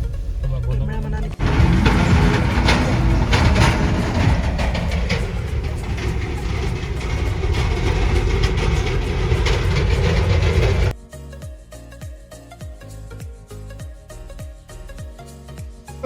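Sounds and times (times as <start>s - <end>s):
car interior road rumble: 0.0s - 10.9s
background music: 0.0s - 16.0s
knocks and rattles: 1.4s - 11.0s.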